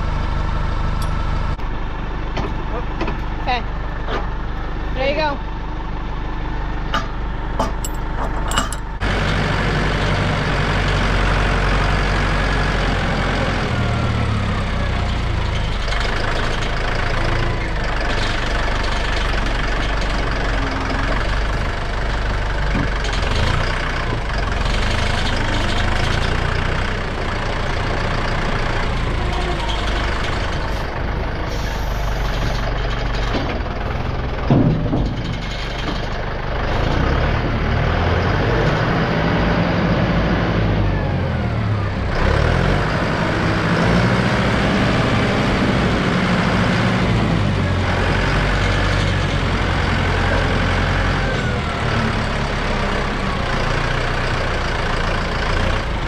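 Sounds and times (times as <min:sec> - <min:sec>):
farm machine engine running: 0:00.0 - 0:56.0
machine clunk: 0:34.4 - 0:36.2.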